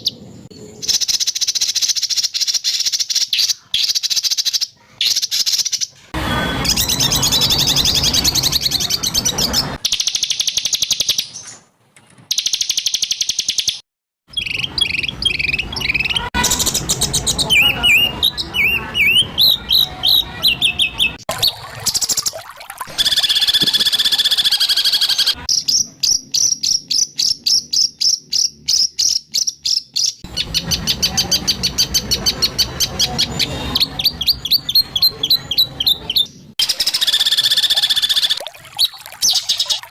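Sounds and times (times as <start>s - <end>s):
songbird trills and whistles: 22.9s - 39.9s.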